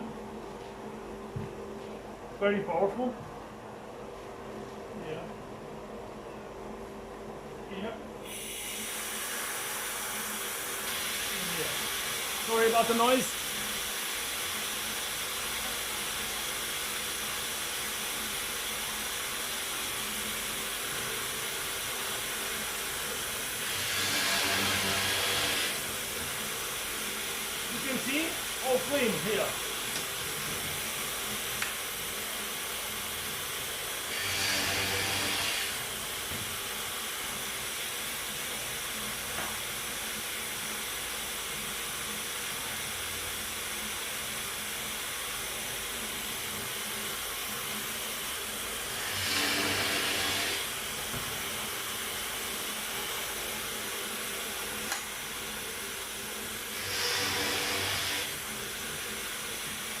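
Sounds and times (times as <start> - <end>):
workshop vacuum running: 0.0 - 60.0
drill press boring into wood: 23.6 - 25.8, 34.1 - 35.8, 48.9 - 50.7, 56.8 - 58.4.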